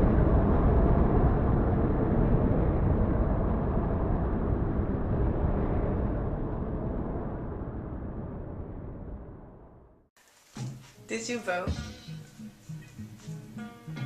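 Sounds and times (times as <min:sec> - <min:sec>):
loud low rumbling: 0:00.0 - 0:10.1.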